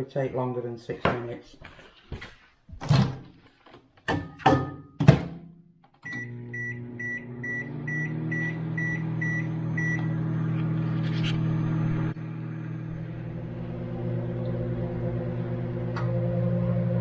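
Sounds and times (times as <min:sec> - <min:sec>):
microwave door knocks and clicks: 0:04.1 - 0:05.5
microwave short beep: 0:06.0 - 0:10.2
microwave running hum: 0:06.0 - 0:17.0.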